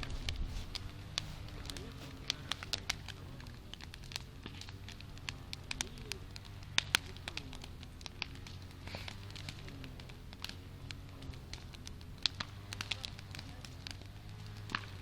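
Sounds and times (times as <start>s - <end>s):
wood fire crackling and popping: 0.0s - 15.0s.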